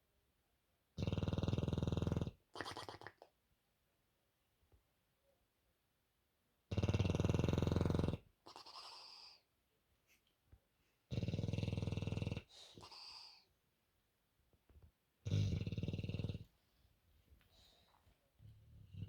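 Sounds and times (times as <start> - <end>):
dog snoring: 1.0 - 3.2, 6.7 - 9.4, 11.1 - 13.5, 15.2 - 16.5, 18.8 - 19.0.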